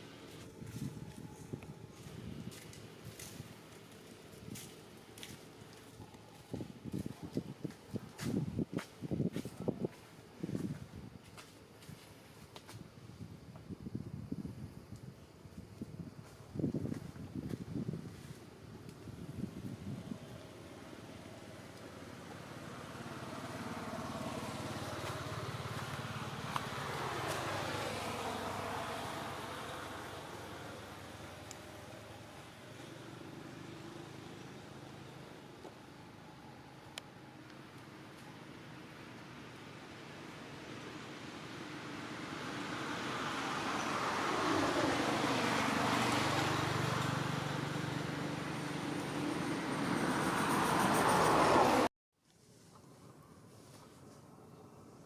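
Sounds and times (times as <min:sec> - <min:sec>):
vehicle passing by: 0:19.3 - 0:37.4, 0:40.0 - 0:51.9.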